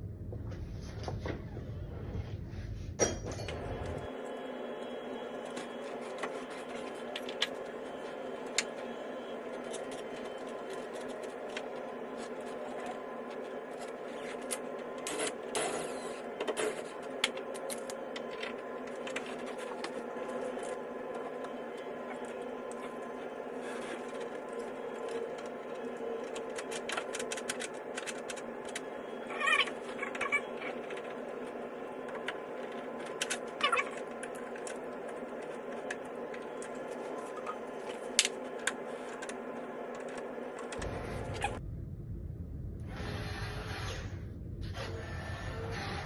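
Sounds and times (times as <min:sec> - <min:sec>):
steady background hum: 0:00.0 - 0:46.0.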